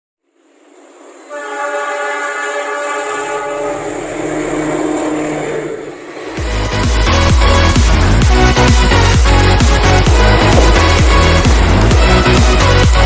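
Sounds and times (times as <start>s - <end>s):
train rumbling past: 0.2s - 13.0s
train horn blast: 1.2s - 7.4s
electronic music with a beat: 6.4s - 13.0s.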